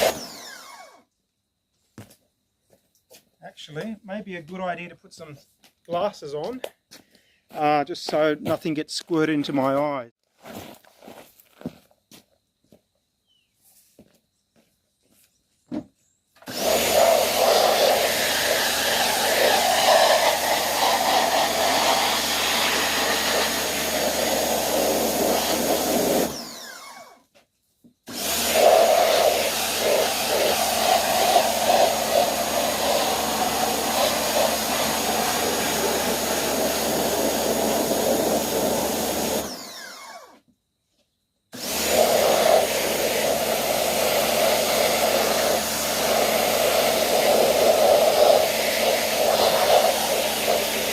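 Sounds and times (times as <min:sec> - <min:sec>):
pressure cleaner spraying water: 0:00.0 - 0:00.4, 0:16.5 - 0:26.5, 0:28.1 - 0:39.6, 0:41.6 - 0:50.9.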